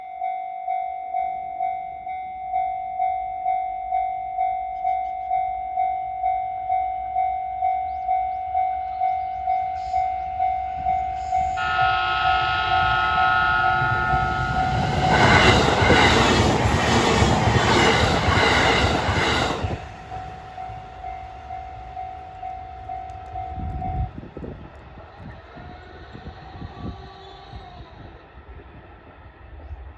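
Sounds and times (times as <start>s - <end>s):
level crossing warning bell: 0.0s - 24.1s
train horn: 11.1s - 24.1s
train wheels clattering over rails: 13.9s - 25.3s.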